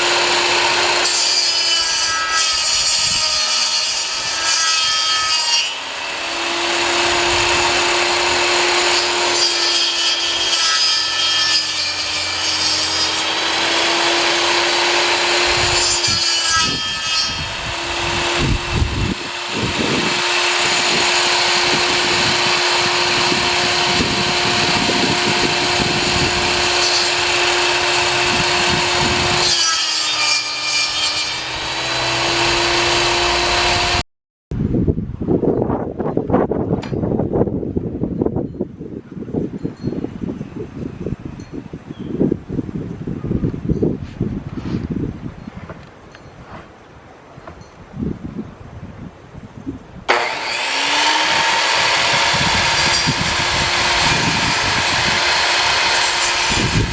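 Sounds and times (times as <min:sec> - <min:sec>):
saw blade rasping through wood: 0:00.0 - 0:34.0, 0:50.1 - 0:56.9
table saw motor whine: 0:00.0 - 0:34.0, 0:50.1 - 0:56.9.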